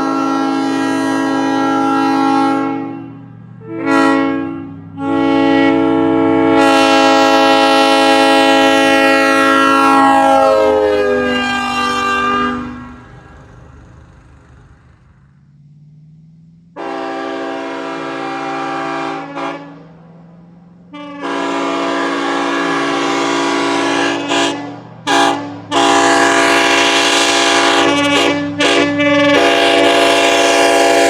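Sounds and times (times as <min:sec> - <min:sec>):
locomotive air horn blasts: 0:00.0 - 0:15.3, 0:16.8 - 0:19.9, 0:20.9 - 0:31.0
low steady hum: 0:03.1 - 0:15.9.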